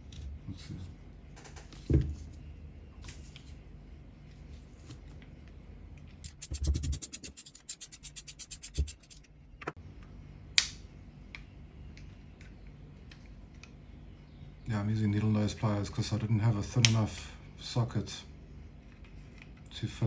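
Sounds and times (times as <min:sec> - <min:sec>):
metal scraping: 0:06.2 - 0:09.3.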